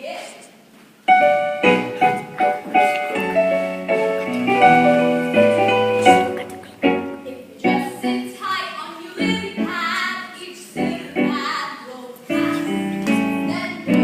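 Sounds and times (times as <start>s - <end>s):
piano playing: 1.0s - 8.5s, 9.2s - 10.0s, 10.8s - 11.6s, 12.3s - 14.0s.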